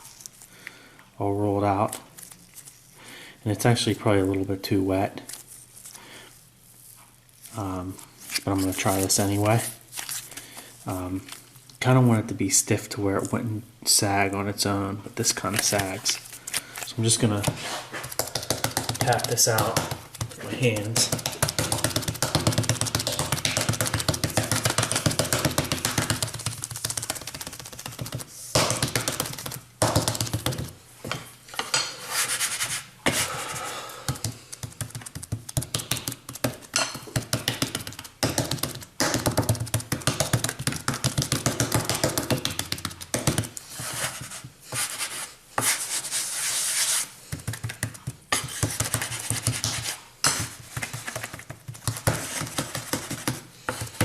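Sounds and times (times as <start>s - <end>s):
hands tapping damp composition: 16.9s - 31.2s, 34.0s - 44.9s, 47.2s - 54.0s.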